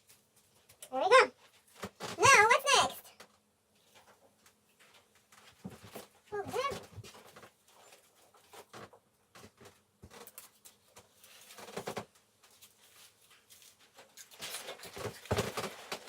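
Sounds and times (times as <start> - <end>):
rustling: 3.7 - 16.0.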